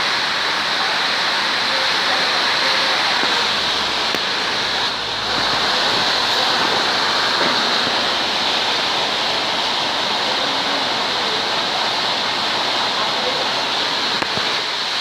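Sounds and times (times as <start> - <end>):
loud rushing noise: 0.0 - 15.0.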